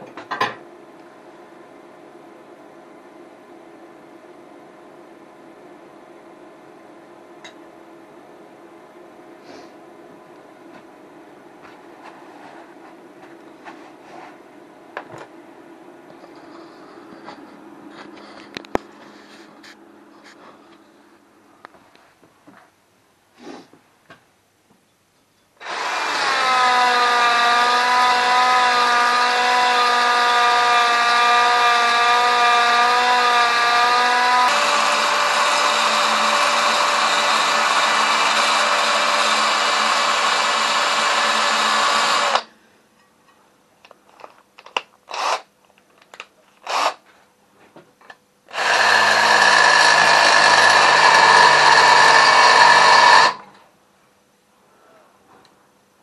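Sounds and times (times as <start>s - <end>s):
power drill drilling: 25.6s - 42.5s, 45.1s - 45.5s, 46.6s - 47.0s, 48.5s - 53.5s.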